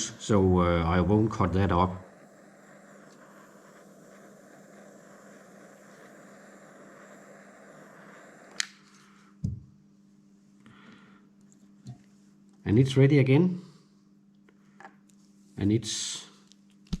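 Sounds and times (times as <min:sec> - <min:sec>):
heat gun blowing: 0:00.0 - 0:09.3.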